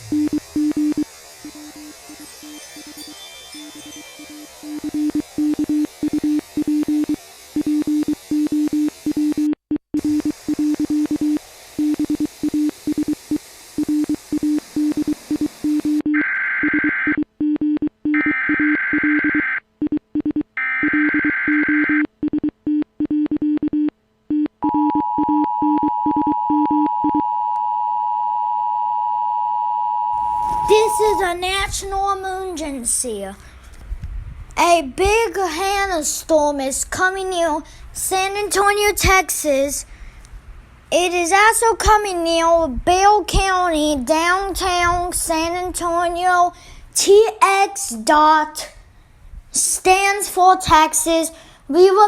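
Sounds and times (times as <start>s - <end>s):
two-tone attention signal: 0.0s - 7.1s, 24.6s - 31.5s
stuttering low buzzing tone: 0.0s - 8.0s
screeching data noise bursts: 0.0s - 8.5s, 30.2s - 31.7s.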